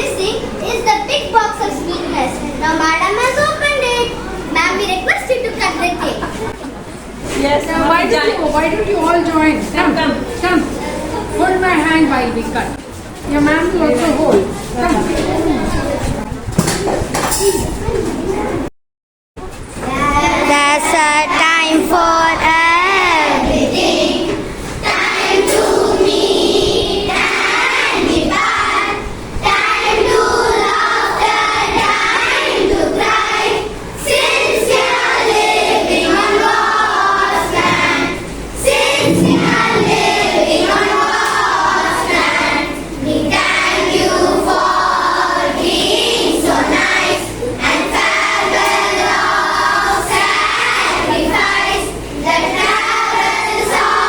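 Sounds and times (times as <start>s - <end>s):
children singing in chorus: 20.4s - 54.0s.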